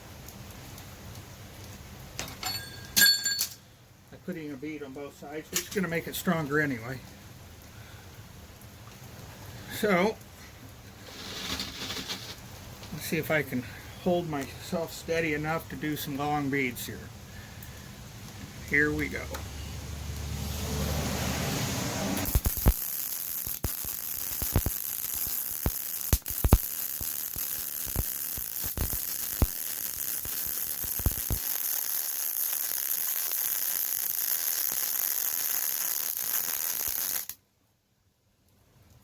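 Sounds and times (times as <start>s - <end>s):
welding arc crackling: 11.0s - 12.6s, 20.1s - 37.4s
sharp pops: 22.2s - 37.4s.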